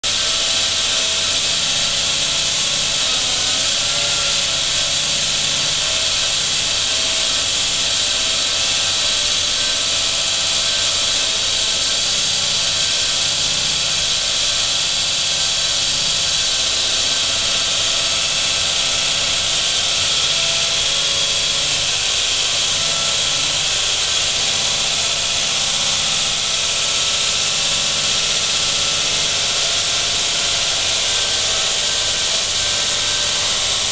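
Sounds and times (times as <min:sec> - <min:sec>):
saw grinding through concrete: 0:00.0 - 0:33.9.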